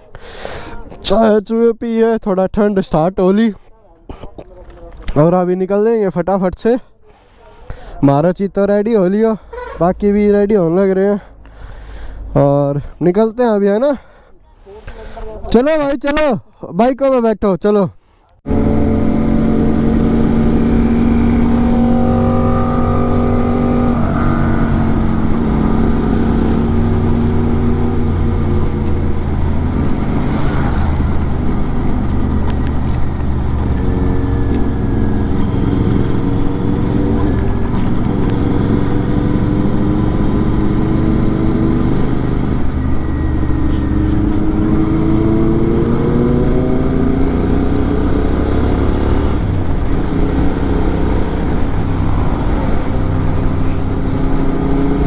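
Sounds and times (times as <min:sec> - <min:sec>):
motorcycle engine accelerating: 0:18.5 - 0:55.0.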